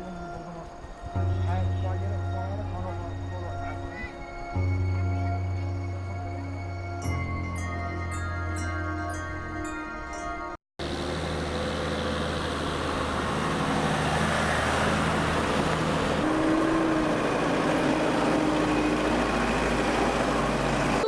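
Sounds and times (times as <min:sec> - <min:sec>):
road noise: 0:00.0 - 0:07.5, 0:10.8 - 0:21.0
vehicle engine running: 0:10.8 - 0:21.0.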